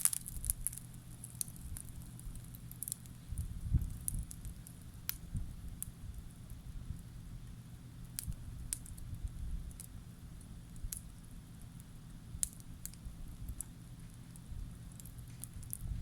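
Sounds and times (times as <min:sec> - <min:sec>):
campfire crackling: 0:00.0 - 0:16.0
low rumble: 0:00.4 - 0:10.2, 0:14.4 - 0:16.0.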